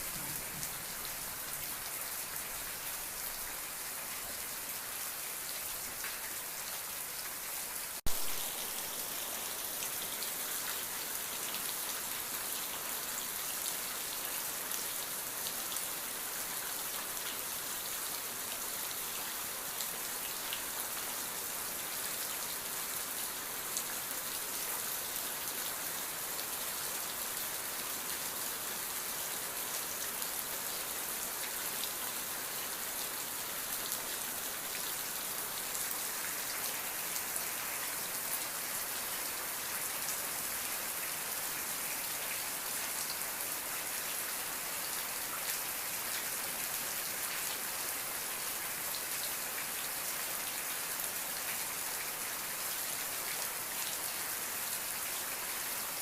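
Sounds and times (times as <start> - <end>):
rain pattering: 0.0 - 4.5, 8.0 - 21.1.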